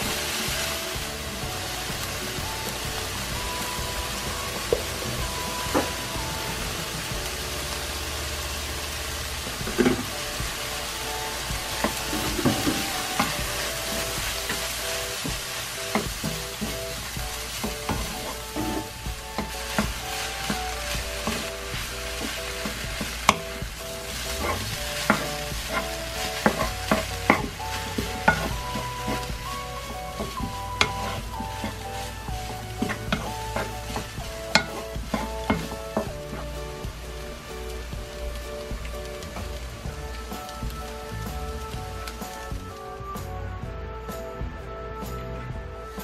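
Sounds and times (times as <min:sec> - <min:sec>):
food sizzling in frying pan: 0:00.0 - 0:43.3
soft instrumental melody: 0:00.0 - 0:46.0
utensil scraping and tapping pan: 0:22.1 - 0:29.4.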